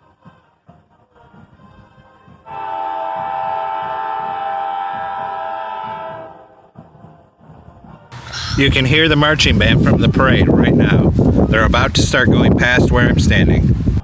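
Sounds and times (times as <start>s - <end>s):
locomotive air horn blast: 1.7s - 6.8s.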